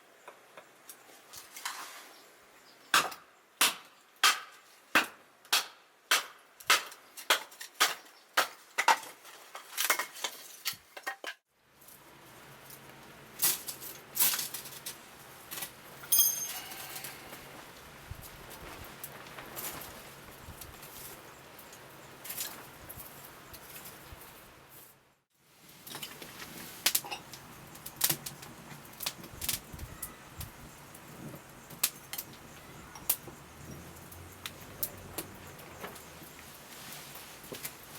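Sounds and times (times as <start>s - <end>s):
high metallic ring: 16.0s - 17.4s.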